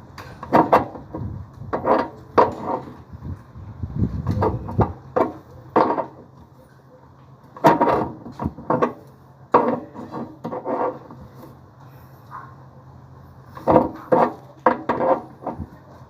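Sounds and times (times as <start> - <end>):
hard objects knocking and clunking: 0.2 - 3.0, 4.2 - 6.4, 7.5 - 11.2, 13.5 - 15.9.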